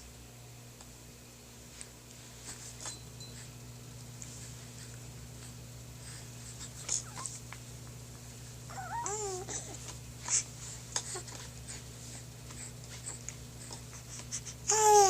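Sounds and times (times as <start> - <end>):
steady low hum: 0.0 - 15.0
baby cooing: 8.7 - 9.8, 14.7 - 15.0.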